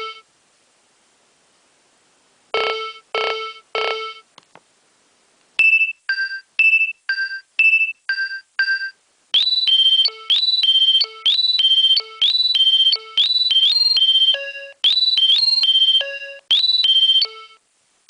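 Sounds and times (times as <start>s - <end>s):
phone ringing notes: 0.0s - 0.3s, 2.6s - 4.3s, 5.6s - 17.6s
fast electronic melody: 9.4s - 17.6s.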